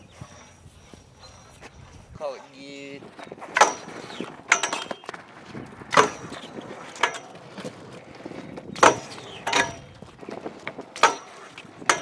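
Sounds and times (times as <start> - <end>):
bike metal knocks and clanks: 3.5 - 5.2, 5.8 - 7.7, 8.8 - 10.0, 10.6 - 12.0.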